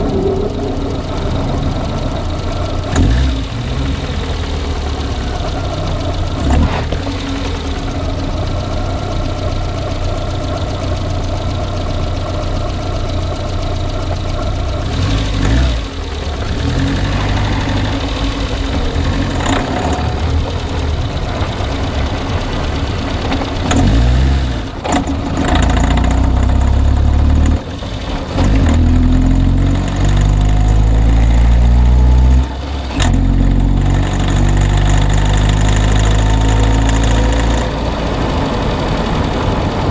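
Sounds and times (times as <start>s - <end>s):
car engine knocking and revving: 0.0s - 39.9s.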